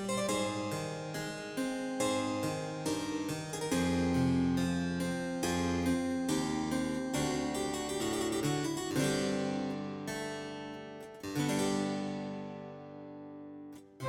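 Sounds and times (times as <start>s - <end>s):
instrumental keyboard music: 0.0s - 14.0s.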